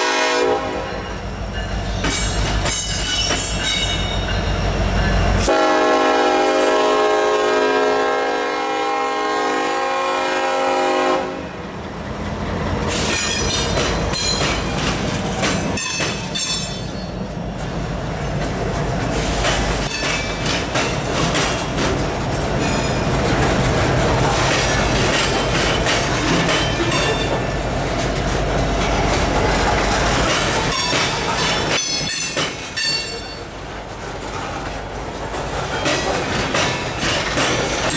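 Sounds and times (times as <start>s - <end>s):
locomotive air horn chord: 0.0s - 1.0s, 5.4s - 11.6s
train rolling past rumble: 0.0s - 37.9s
wheels clacking over rail joints: 1.1s - 5.5s, 11.6s - 37.9s.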